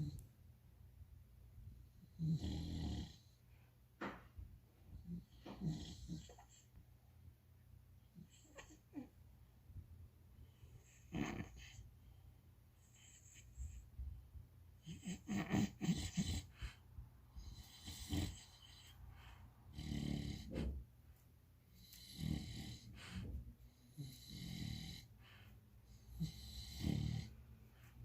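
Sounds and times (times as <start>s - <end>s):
dog snoring: 0.0s - 0.2s, 1.9s - 3.4s, 4.9s - 6.7s, 10.8s - 11.9s, 14.8s - 20.9s, 21.7s - 27.9s
dog snorting: 5.0s - 6.6s, 10.9s - 11.8s, 14.8s - 16.8s, 17.4s - 20.8s, 21.8s - 25.1s, 25.9s - 27.4s.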